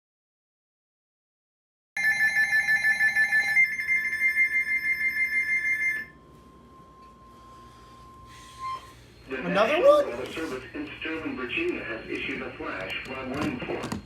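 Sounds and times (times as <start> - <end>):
steady single tone: 6.0 - 10.2
pulsing electronic data screech: 7.3 - 10.6.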